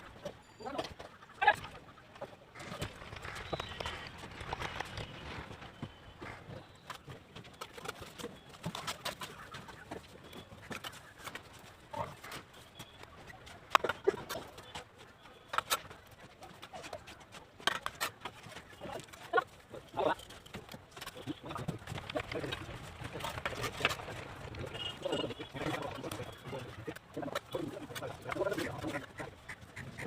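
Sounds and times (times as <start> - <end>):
hens clucking: 17.7 - 30.0
pigeons cooing: 21.0 - 30.0.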